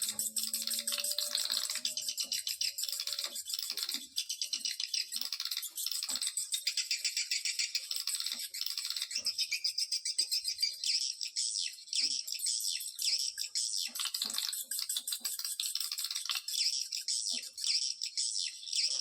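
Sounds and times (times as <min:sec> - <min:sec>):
swiftlets rattling chatter: 0:00.0 - 0:03.9.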